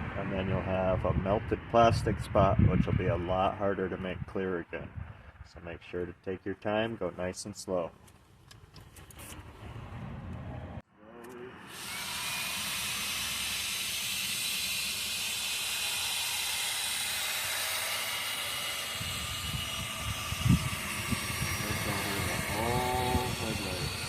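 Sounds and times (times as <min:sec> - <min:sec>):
drill sanding plastic: 0:11.7 - 0:24.0.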